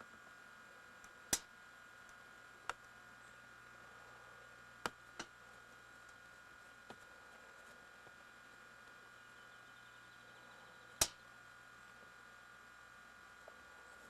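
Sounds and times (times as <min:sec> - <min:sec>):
faint electrical hum: 0:00.0 - 0:14.0.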